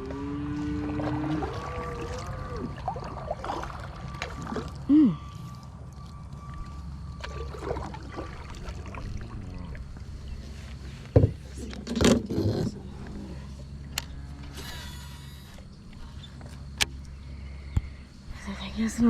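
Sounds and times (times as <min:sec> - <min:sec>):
cattle mooing: 0:00.0 - 0:05.3, 0:08.7 - 0:10.0, 0:13.9 - 0:15.2
water lapping against kayak: 0:00.0 - 0:13.8.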